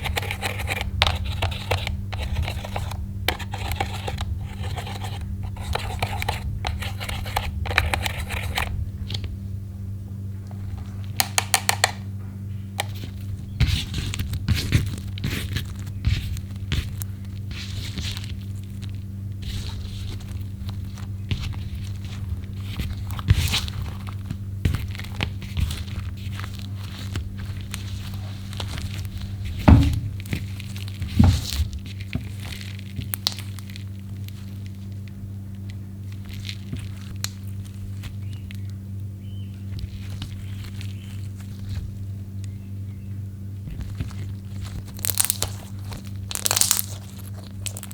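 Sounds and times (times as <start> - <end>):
steady low hum: 0.0 - 47.9
heavy thumps: 29.2 - 31.8.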